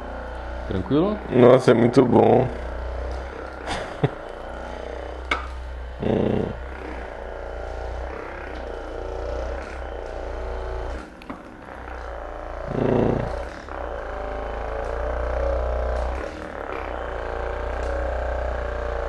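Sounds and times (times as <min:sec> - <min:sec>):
electric massager humming: 0:00.0 - 0:19.0.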